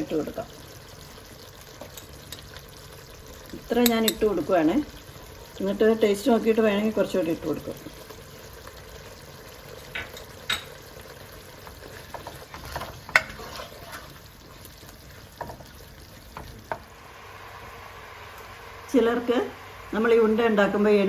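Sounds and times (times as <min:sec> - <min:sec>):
faint sizzle: 0:00.0 - 0:21.0
spoon scraping and clicking on pan: 0:01.8 - 0:02.5, 0:11.9 - 0:14.2.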